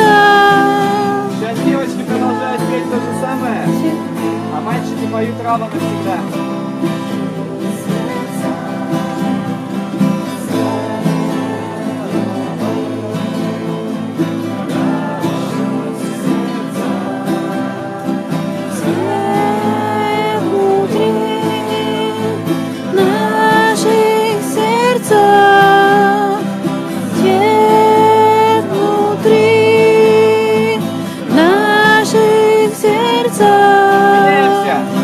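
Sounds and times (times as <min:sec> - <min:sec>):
acoustic guitar: 0:00.0 - 0:35.0
voices singing: 0:00.0 - 0:35.0.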